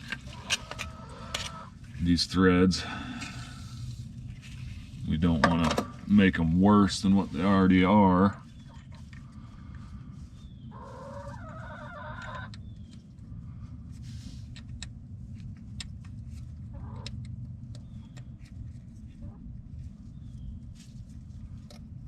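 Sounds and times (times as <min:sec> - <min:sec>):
low hum: 0:00.0 - 0:22.0
chicken calling: 0:00.3 - 0:01.7, 0:10.6 - 0:12.6, 0:16.7 - 0:17.1.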